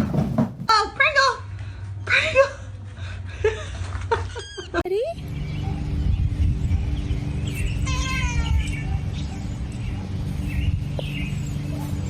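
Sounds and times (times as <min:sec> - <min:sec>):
cat meowing: 0:07.8 - 0:09.0.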